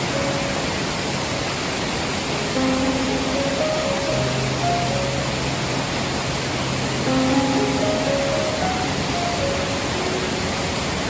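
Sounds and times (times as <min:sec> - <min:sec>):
soft slow music: 0:00.0 - 0:11.0
waterfall rushing: 0:00.0 - 0:11.0.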